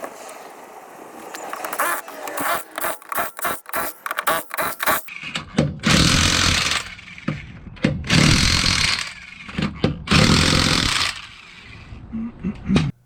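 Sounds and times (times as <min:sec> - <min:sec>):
impact wrench running: 0:01.5 - 0:11.9.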